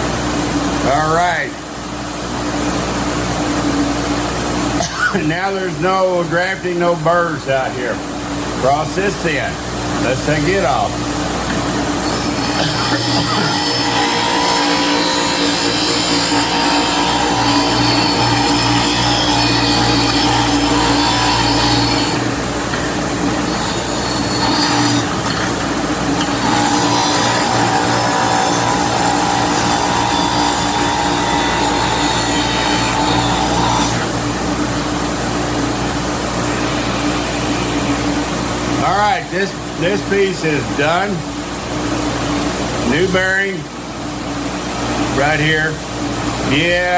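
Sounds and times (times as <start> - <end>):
metal grinding hiss: 10.2 - 34.3
bench grinder humming: 11.4 - 34.6.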